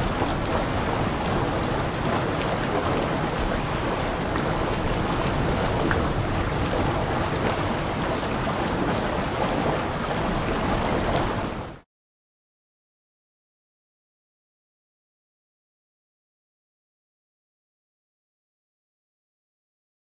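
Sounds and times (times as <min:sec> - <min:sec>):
heavy rain falling: 0:00.0 - 0:11.8.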